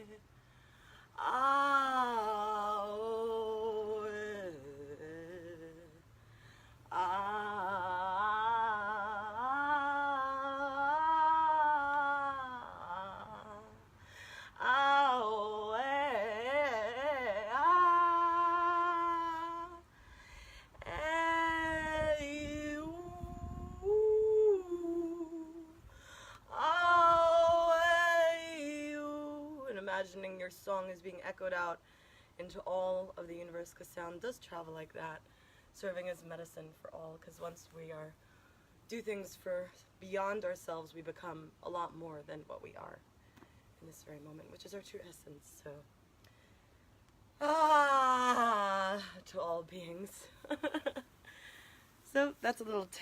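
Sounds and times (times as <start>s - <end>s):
woman singing sustained tones: 0.0s - 0.3s, 1.0s - 31.7s, 47.4s - 51.0s
woman breathing: 0.3s - 1.2s, 6.1s - 6.9s, 13.9s - 14.6s, 19.9s - 20.8s, 25.8s - 26.5s, 31.8s - 32.4s, 35.2s - 35.8s, 46.2s - 47.0s, 51.2s - 52.0s.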